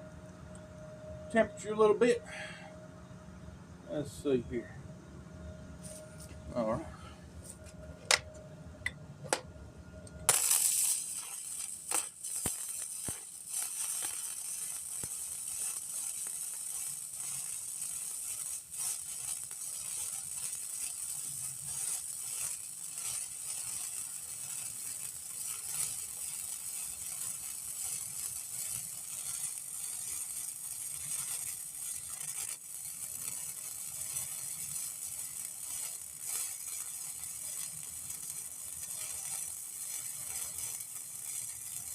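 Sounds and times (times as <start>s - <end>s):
welding arc crackling: 9.3s - 41.9s.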